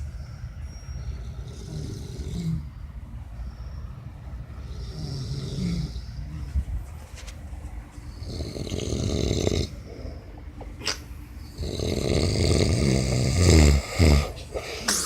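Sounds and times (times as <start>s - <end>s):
person snoring: 11.6s - 15.0s.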